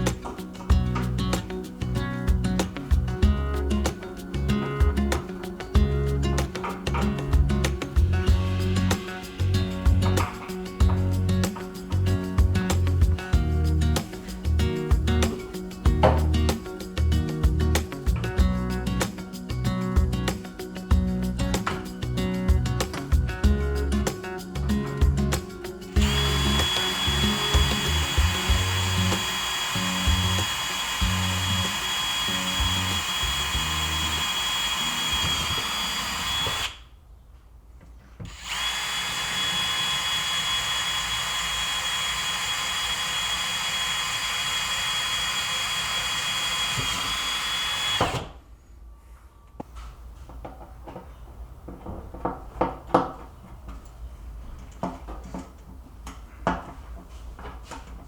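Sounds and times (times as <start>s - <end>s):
power tool motor whining: 25.8s - 36.8s, 38.2s - 48.4s.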